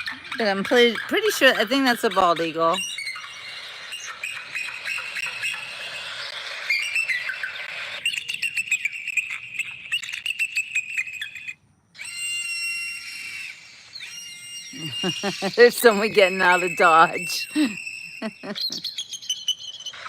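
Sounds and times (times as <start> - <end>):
eagle high piping chirps: 0.0 - 20.0
mixed bird calls: 0.0 - 20.0.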